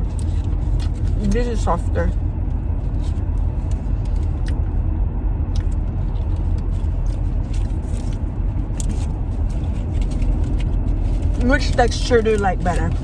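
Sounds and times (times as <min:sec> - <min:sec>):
road rumble inside car: 0:00.0 - 0:13.0
small clicks and crackles: 0:05.6 - 0:13.0.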